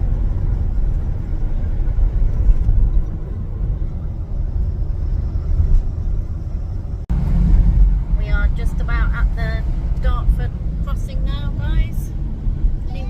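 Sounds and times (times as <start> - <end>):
car engine rumble: 0.0 - 13.0
tyre road noise: 0.0 - 13.0.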